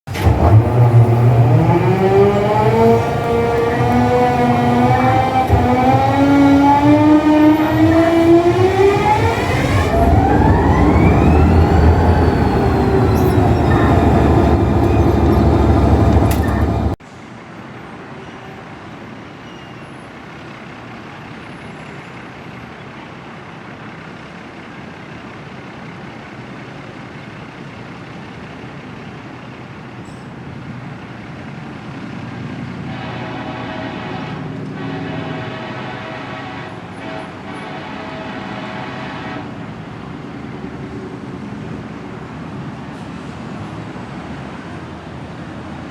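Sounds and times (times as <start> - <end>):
wailing siren: 0.1 - 17.0, 32.8 - 39.7
quiet rumbling noise: 9.4 - 17.0.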